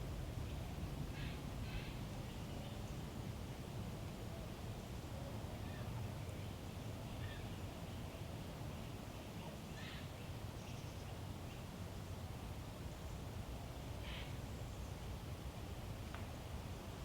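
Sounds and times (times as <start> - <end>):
faint bird calls: 14.0 - 14.4.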